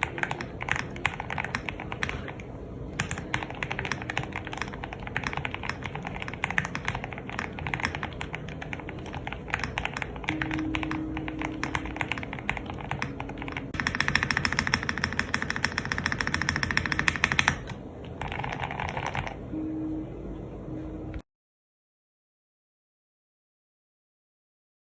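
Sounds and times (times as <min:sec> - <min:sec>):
mechanical keyboard typing: 0:00.0 - 0:19.4.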